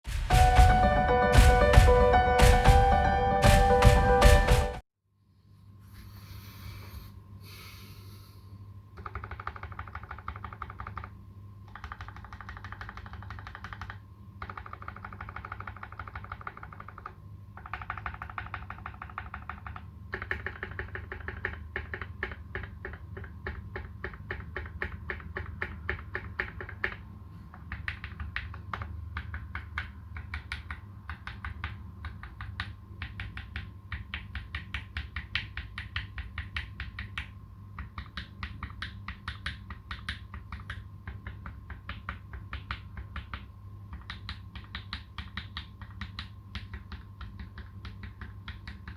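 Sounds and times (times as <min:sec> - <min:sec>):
faint steady hum: 0:05.0 - 0:48.9
mechanical keyboard typing: 0:09.0 - 0:48.9.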